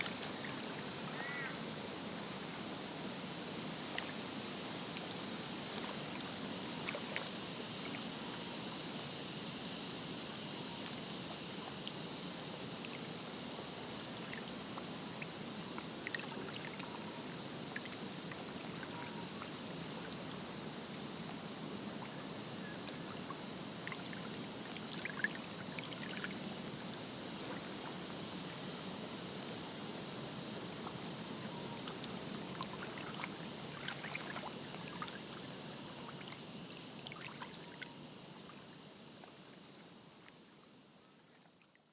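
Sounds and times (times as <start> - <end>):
small water splashes: 31.8 - 37.9
lake water lapping: 32.5 - 35.4.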